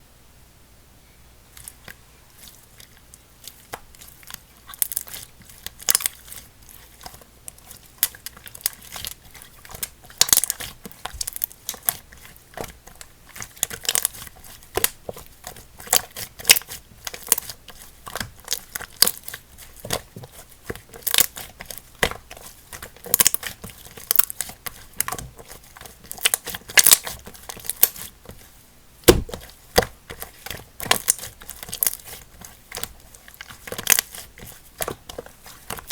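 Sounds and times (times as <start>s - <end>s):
slime squishing and crackling: 1.5s - 28.5s, 29.1s - 35.9s
slime snapping: 29.1s - 29.4s.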